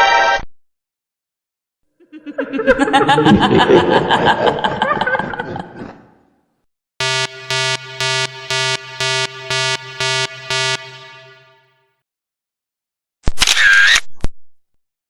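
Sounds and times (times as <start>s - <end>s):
group of people laughing: 2.0s - 6.2s.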